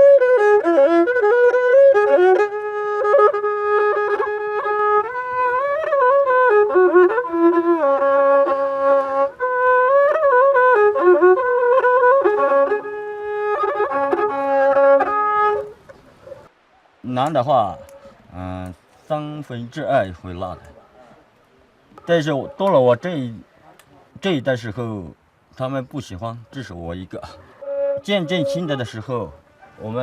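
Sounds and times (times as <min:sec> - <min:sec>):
bowed string instrument melody: 0:00.0 - 0:16.4, 0:27.2 - 0:30.0.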